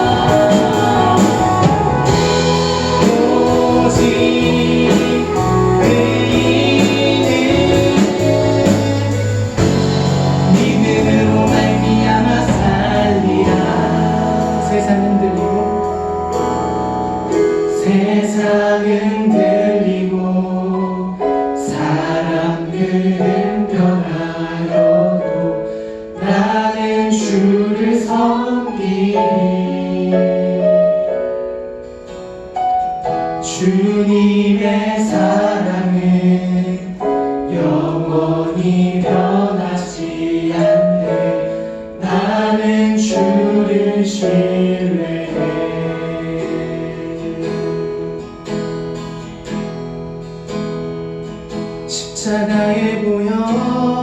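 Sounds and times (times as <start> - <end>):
voices singing: 0.0 - 15.9, 26.2 - 30.9, 33.5 - 47.8
praise band playing: 0.0 - 54.0.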